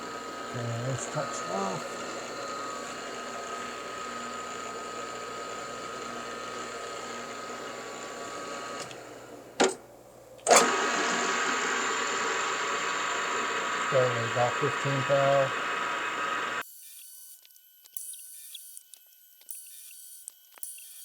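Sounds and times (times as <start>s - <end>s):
milling machine humming and whining: 0.0s - 9.8s, 10.4s - 16.6s.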